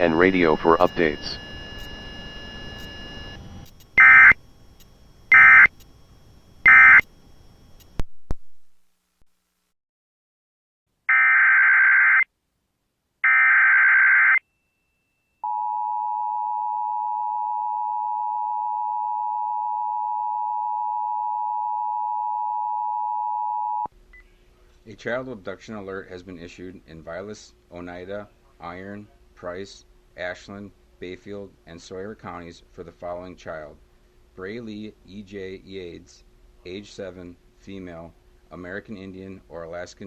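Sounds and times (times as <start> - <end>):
two-tone attention signal: 0.0 - 4.4, 5.3 - 5.7
screeching data bursts: 0.0 - 5.9, 6.6 - 7.1.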